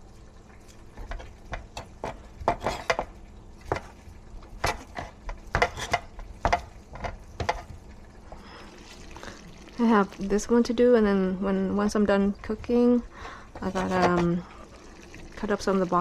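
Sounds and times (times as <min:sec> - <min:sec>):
utensil scraping a pan: 0:00.7 - 0:07.9, 0:13.1 - 0:14.5.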